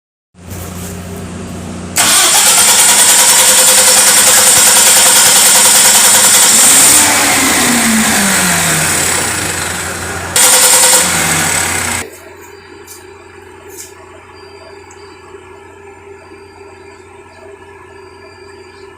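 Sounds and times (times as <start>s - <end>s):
diesel engine cranking: 1.9s - 12.1s.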